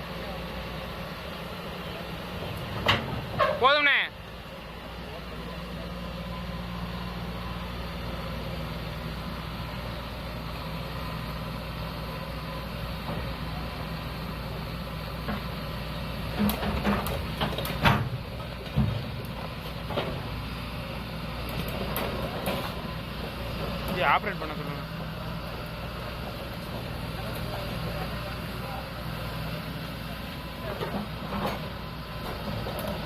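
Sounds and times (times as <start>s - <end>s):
diesel engine running: 0.0s - 33.0s
metal clanks and knocks: 2.8s - 3.8s, 16.4s - 19.1s.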